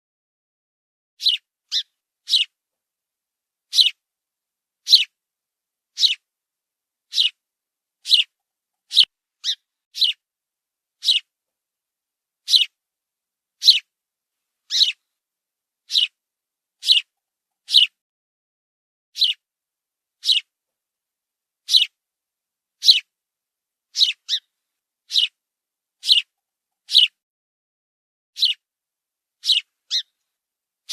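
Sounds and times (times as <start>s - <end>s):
sparrow chirping: 1.2s - 2.6s, 3.7s - 4.0s, 4.8s - 5.2s, 5.9s - 6.3s, 7.1s - 7.4s, 8.0s - 10.2s, 11.0s - 11.3s, 12.4s - 12.8s, 13.6s - 13.9s, 14.7s - 15.1s, 15.8s - 16.2s, 16.8s - 18.0s, 19.2s - 19.4s, 20.2s - 20.5s, 21.6s - 22.0s, 22.8s - 23.1s, 23.9s - 25.4s, 26.0s - 27.2s, 28.4s - 28.6s, 29.4s - 30.9s.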